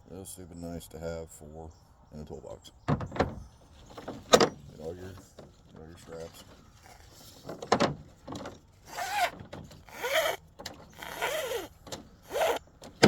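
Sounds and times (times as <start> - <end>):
cordless drill whine: 8.9 - 12.6.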